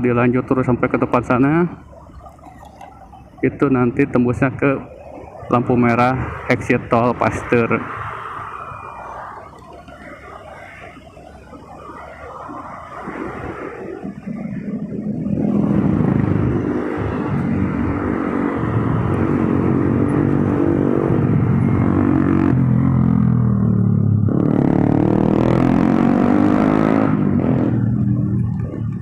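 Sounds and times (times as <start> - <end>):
motorbike engine accelerating: 14.0 - 29.0.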